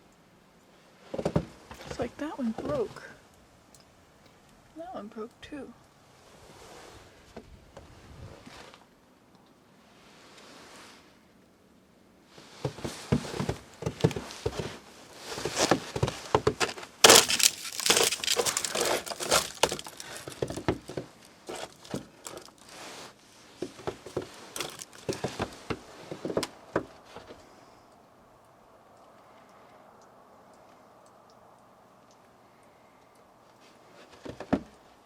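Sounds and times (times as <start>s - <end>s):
crunching and crackling: 13.2s - 27.1s.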